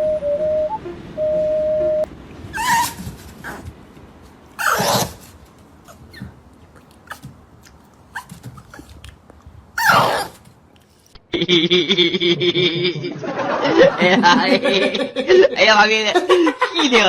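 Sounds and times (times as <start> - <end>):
dog crying: 2.5 - 3.8, 4.6 - 9.1, 9.8 - 10.5.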